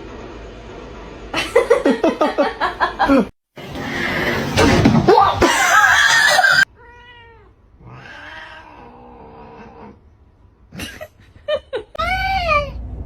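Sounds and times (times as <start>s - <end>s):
cat meowing: 5.6s - 9.0s.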